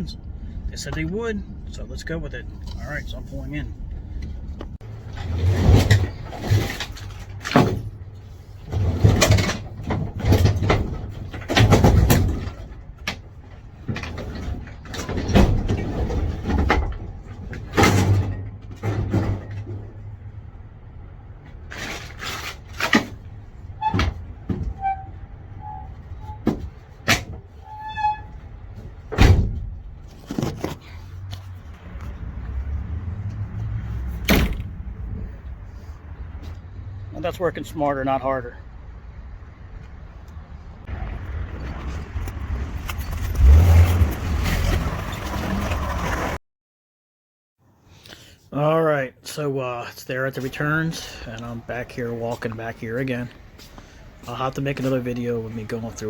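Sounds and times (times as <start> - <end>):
heavy thuds and rattles unloading: 3.4 - 20.2, 21.4 - 31.7, 33.8 - 36.0.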